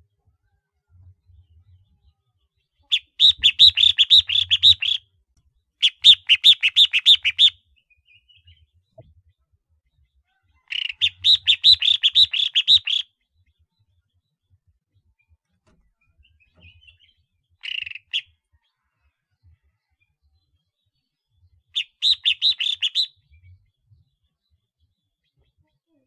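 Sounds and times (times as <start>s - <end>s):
bird calling rapid notes: 21.8s - 23.1s.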